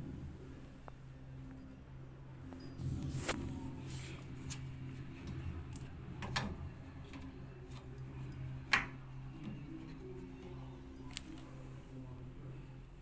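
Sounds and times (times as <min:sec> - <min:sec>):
washing machine humming: 0:02.8 - 0:12.2.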